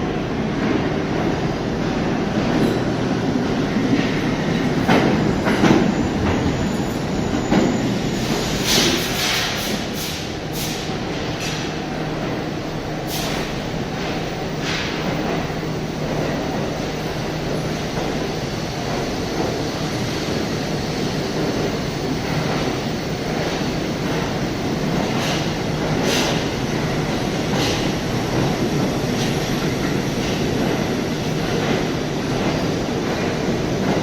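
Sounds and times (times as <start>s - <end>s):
subway train rumbling: 0.0s - 34.0s
wheels squealing on rails: 4.6s - 9.6s.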